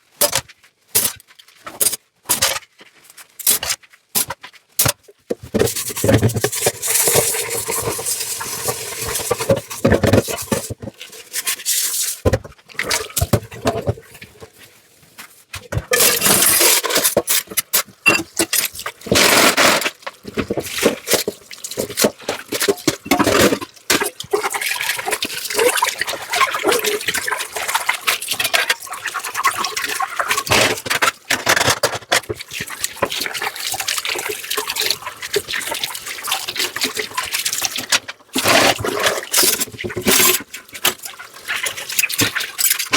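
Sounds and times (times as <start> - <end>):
tap water splashing in sink: 32.2 - 42.9.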